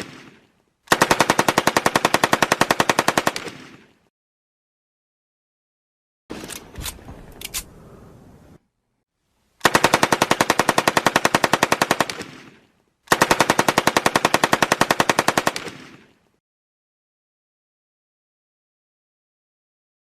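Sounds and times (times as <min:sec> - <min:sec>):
machine gun firing: 0:00.9 - 0:03.8, 0:09.6 - 0:16.1.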